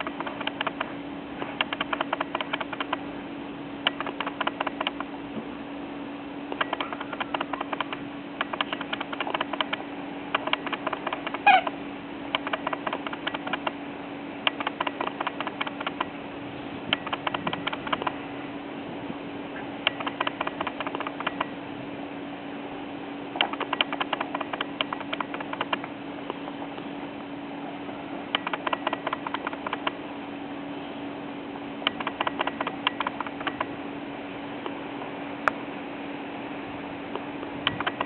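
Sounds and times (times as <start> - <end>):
puppies clicking: 0.0 - 3.0, 3.9 - 5.1, 6.5 - 11.7, 12.4 - 13.8, 14.5 - 16.1, 16.9 - 18.2, 19.9 - 21.5, 23.4 - 25.9, 28.4 - 30.0, 31.9 - 33.7, 37.7 - 38.0
low hum: 0.0 - 38.0.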